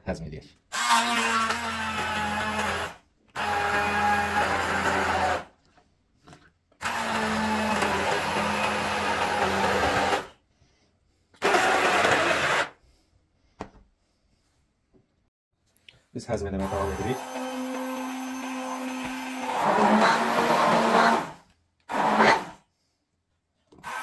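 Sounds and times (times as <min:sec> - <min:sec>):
blender chopping fruit: 0:00.8 - 0:05.5, 0:06.8 - 0:10.3, 0:11.4 - 0:12.8, 0:16.6 - 0:22.6, 0:23.8 - 0:24.0.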